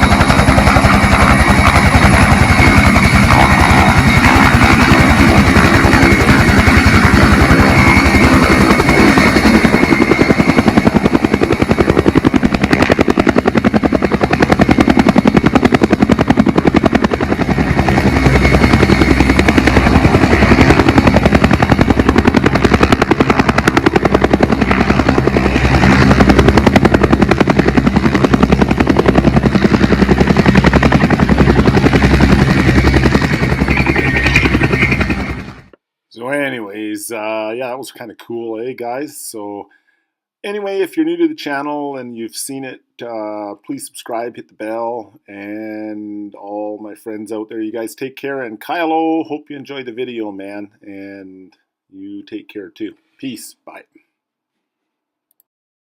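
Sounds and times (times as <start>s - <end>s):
helicopter rotor beating: 0.0s - 35.8s.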